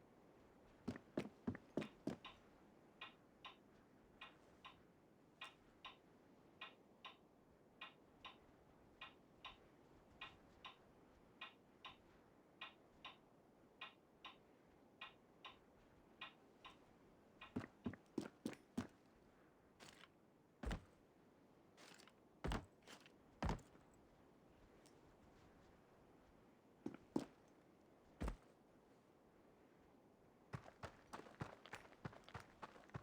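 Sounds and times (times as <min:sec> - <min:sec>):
faint ticking in pairs: 0:00.9 - 0:18.9.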